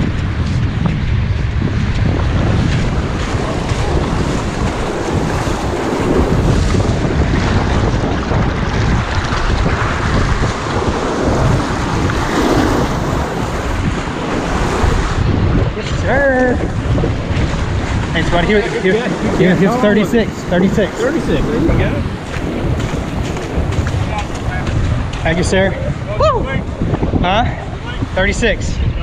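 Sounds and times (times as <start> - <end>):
wind buffeting microphone: 0.0 - 29.0
ocean surf breaking: 1.2 - 28.4.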